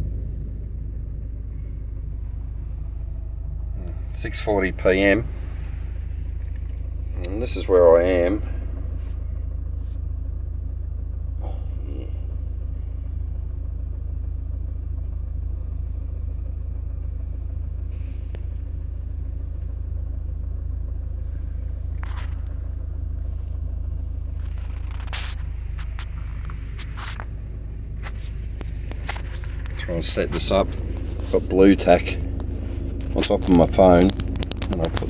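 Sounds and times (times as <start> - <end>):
car engine drone from inside: 0.0 - 35.0
phone being handled: 32.2 - 35.0.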